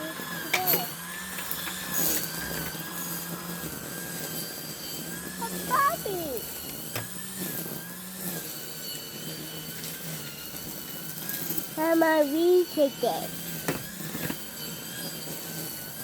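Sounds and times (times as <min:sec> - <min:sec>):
wavering high-pitched sound: 0:00.0 - 0:08.2
electric motor hum with whine: 0:00.0 - 0:16.0.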